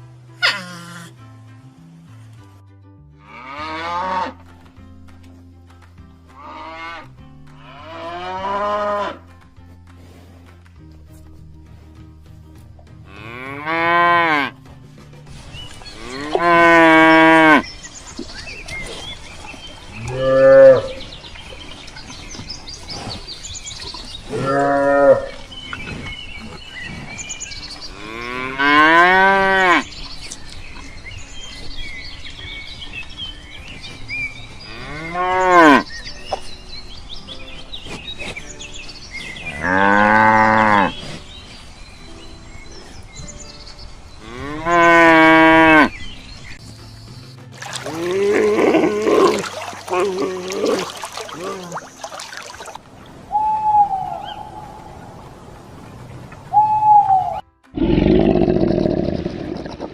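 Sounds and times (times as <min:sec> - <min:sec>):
cattle mooing: 0:20.0 - 0:21.0, 0:24.3 - 0:25.4, 0:39.6 - 0:41.0, 0:47.9 - 0:51.7.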